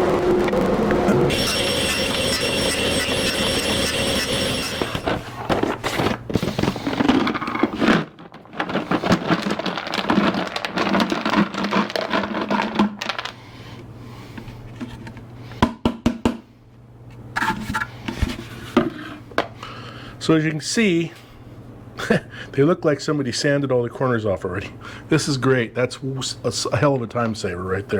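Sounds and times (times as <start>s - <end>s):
steady low hum: 0.0s - 8.0s
wooden pieces clattering: 4.7s - 13.4s.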